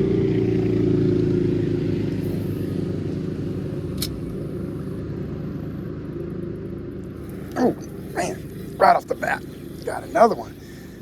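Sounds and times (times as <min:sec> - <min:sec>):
engine running: 0:00.0 - 0:11.0
sharp click: 0:03.9 - 0:04.2.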